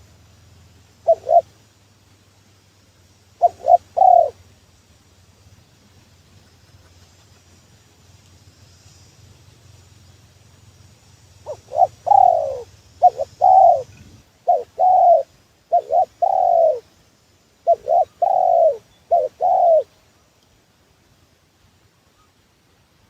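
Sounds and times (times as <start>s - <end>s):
faint low hum: 0.0s - 23.0s
dove cooing: 1.0s - 1.6s, 3.4s - 4.4s, 11.4s - 16.9s, 17.6s - 19.9s.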